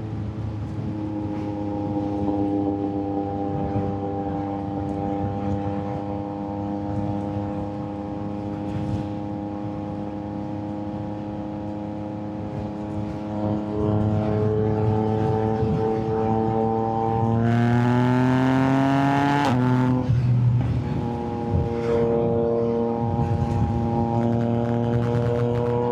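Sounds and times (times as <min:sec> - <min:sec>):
motorcycle engine accelerating: 0:00.0 - 0:25.9.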